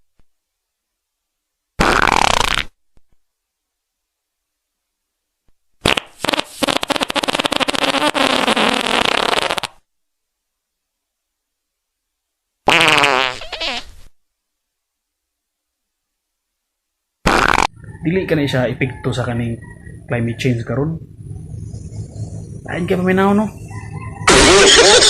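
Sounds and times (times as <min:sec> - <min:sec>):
fart sounds: 0:01.8 - 0:02.8, 0:05.8 - 0:09.8, 0:12.6 - 0:14.1, 0:17.2 - 0:17.8, 0:24.3 - 0:25.0.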